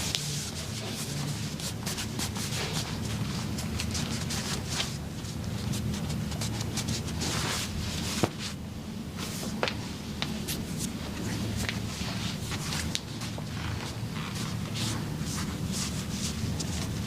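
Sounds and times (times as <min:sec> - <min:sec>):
handling and rustling: 0:00.0 - 0:08.6.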